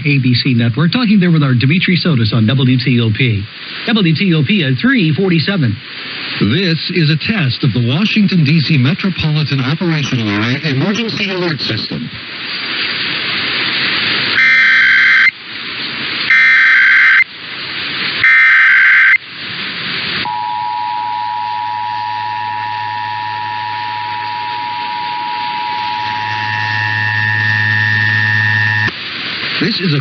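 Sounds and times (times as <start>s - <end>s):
radio hiss: 0.0s - 30.0s
two-tone attention signal: 14.4s - 15.3s, 16.3s - 17.2s, 18.2s - 19.2s, 20.3s - 28.9s
data bursts: 14.4s - 15.4s, 16.3s - 17.3s, 18.2s - 19.2s, 20.3s - 28.9s
low hum: 20.2s - 28.9s.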